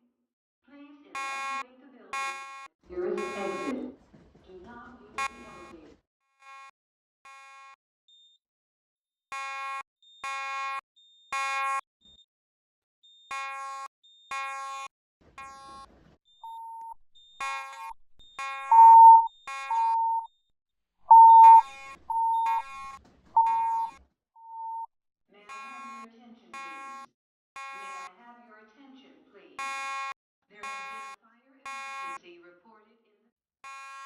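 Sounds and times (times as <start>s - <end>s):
buzzy fire alarm beeps: 2.2s - 3.7s, 16.5s - 17.3s, 18.7s - 20.3s, 21.1s - 22.7s, 23.4s - 23.9s, 24.5s - 24.8s
pure alarm tone beeps: 16.5s - 16.9s, 18.7s - 20.3s, 21.1s - 22.7s, 23.4s - 24.8s.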